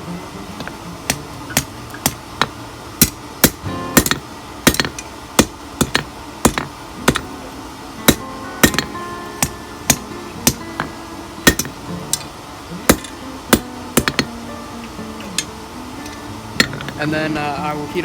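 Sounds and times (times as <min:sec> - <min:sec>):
hammer striking steel on anvil: 0:00.6 - 0:07.4, 0:08.0 - 0:12.3, 0:12.9 - 0:14.4, 0:15.4 - 0:17.1.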